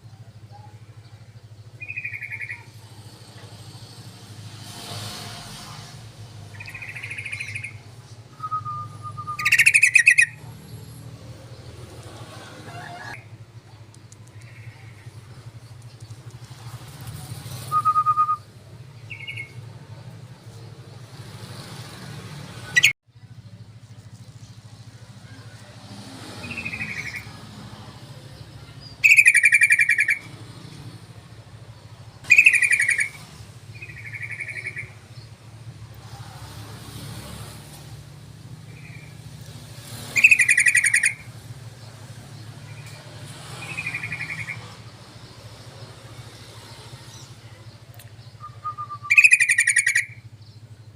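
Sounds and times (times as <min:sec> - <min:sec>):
bulbuls calling: 0:00.0 - 0:03.5, 0:06.3 - 0:22.0, 0:26.4 - 0:36.2, 0:37.5 - 0:46.3, 0:47.1 - 0:50.9.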